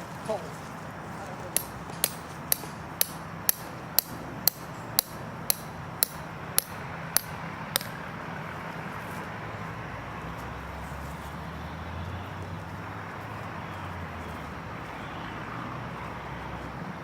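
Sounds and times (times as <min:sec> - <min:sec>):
hammer driving stake into ground: 0:01.6 - 0:08.0.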